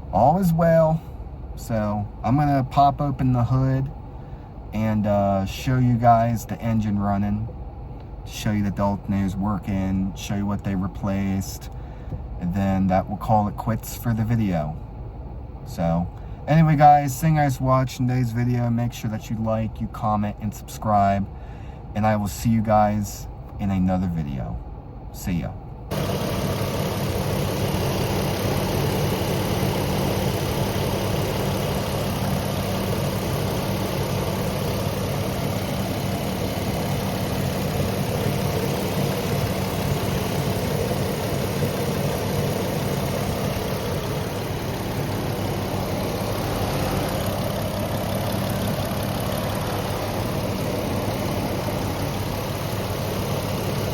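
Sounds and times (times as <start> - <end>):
engine idling: 25.9 - 53.9.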